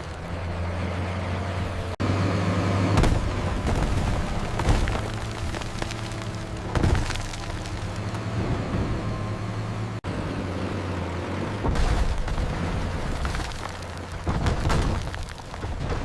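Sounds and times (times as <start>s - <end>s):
bulldozer diesel engine running: 0.0s - 16.0s
loud thuds and cracks: 3.0s - 8.2s, 11.6s - 16.0s.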